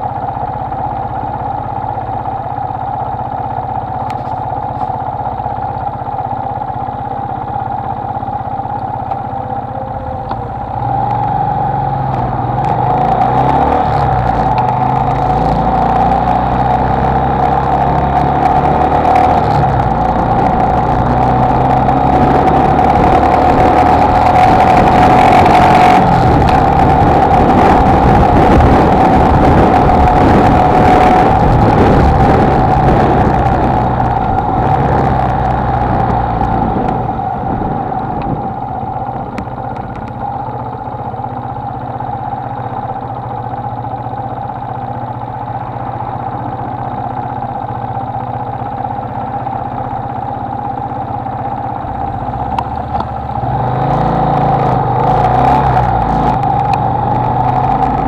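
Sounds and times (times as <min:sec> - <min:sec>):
motorcycle engine running: 0:00.0 - 0:58.0
wind noise: 0:12.3 - 0:40.2.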